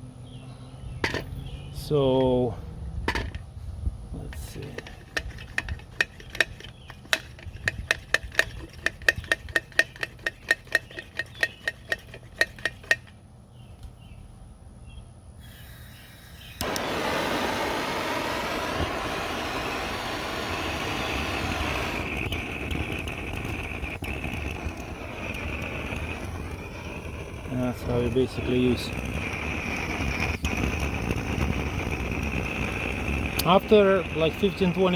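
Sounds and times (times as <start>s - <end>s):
blow torch burner rushing: 4.3s - 13.0s, 15.4s - 34.9s
hand pump metallic clicks: 4.3s - 13.2s.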